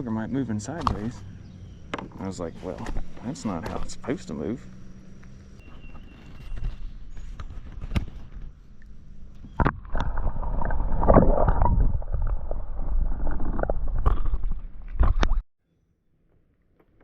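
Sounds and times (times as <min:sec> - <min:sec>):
water splashing around kayak: 0:07.2 - 0:15.4.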